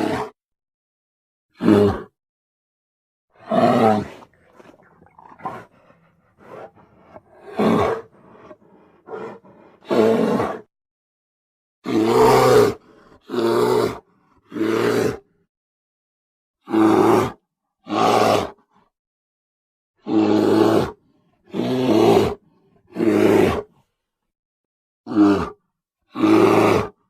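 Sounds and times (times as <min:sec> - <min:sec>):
creature roars: 0:00.0 - 0:00.4, 0:01.6 - 0:02.1, 0:03.4 - 0:10.7, 0:11.9 - 0:15.2, 0:16.7 - 0:18.6, 0:20.0 - 0:23.7, 0:25.1 - 0:27.0.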